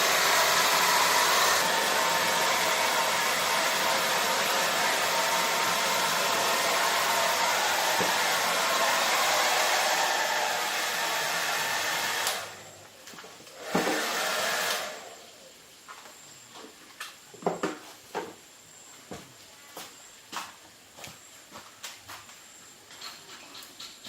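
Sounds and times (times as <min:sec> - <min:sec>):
electric blower running: 0:00.0 - 0:12.7, 0:13.6 - 0:15.2.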